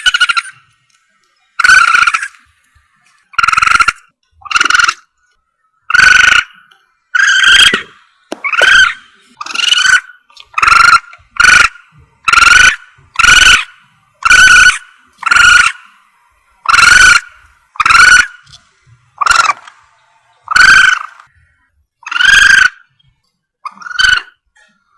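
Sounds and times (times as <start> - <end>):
squealing animal lure call: 0.0 - 0.7, 1.6 - 2.5, 3.3 - 5.1, 5.8 - 16.0, 16.6 - 18.6, 19.2 - 19.7, 20.4 - 21.3, 22.0 - 22.9, 23.6 - 24.5.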